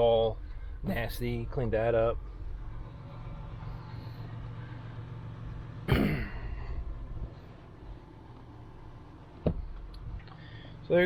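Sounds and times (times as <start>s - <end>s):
steady low hum: 0.0s - 11.0s
man clearing his throat: 5.9s - 6.6s.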